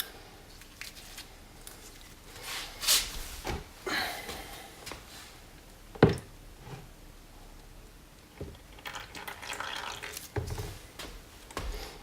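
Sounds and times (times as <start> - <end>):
oil dripping into a bucket: 8.4 - 10.3.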